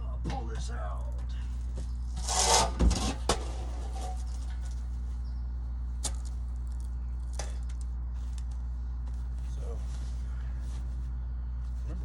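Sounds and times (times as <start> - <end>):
steady low hum: 0.0 - 12.0
tank scraping: 2.1 - 4.7.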